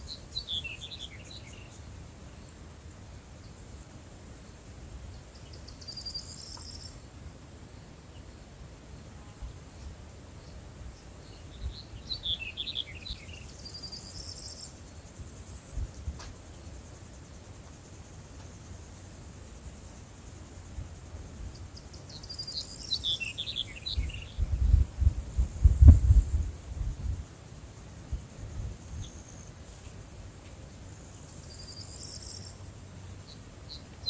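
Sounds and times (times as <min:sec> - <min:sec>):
bird chirping: 0:00.0 - 0:01.8, 0:05.1 - 0:07.0, 0:10.4 - 0:14.8, 0:21.5 - 0:24.6
insect trill: 0:00.0 - 0:34.0.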